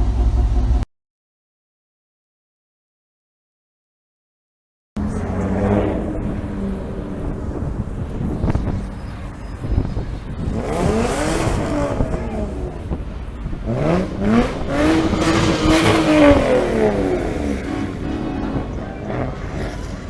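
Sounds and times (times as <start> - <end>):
car engine revving: 5.0 - 20.0.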